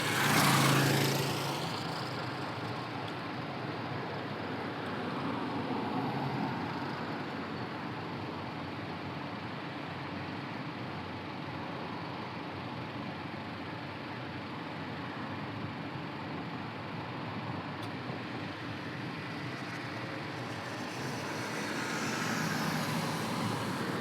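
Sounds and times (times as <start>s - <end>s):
road traffic noise: 0.0s - 24.0s
vehicle passing: 18.5s - 24.0s.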